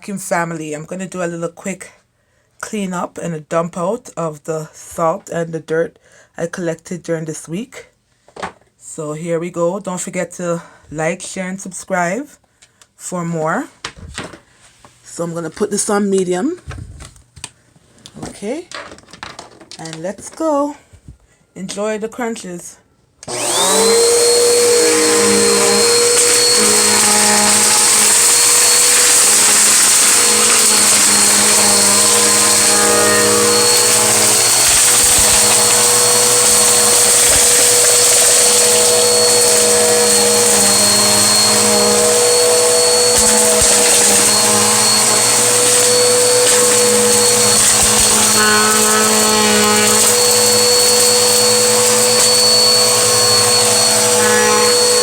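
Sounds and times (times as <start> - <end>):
vacuum cleaner motor whine: 23.3 - 55.0
grit crunching in vacuum: 24.8 - 55.0.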